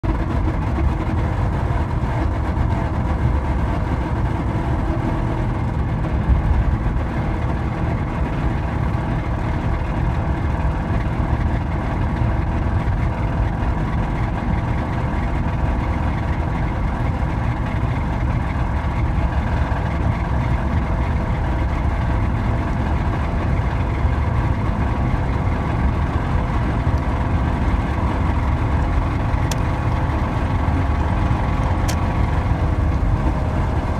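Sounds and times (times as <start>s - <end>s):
car engine running with rod knock: 24.2s - 33.9s.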